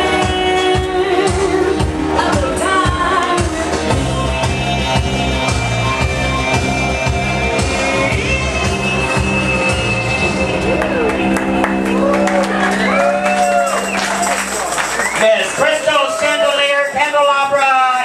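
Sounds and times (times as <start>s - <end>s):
pop song with female vocal: 0.0s - 5.2s.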